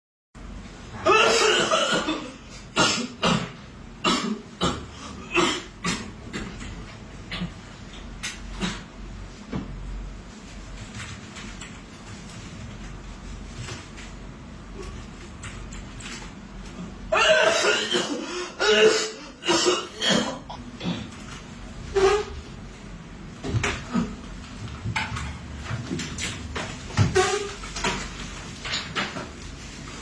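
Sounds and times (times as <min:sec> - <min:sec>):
person coughing: 0:01.0 - 0:06.1, 0:17.1 - 0:21.1.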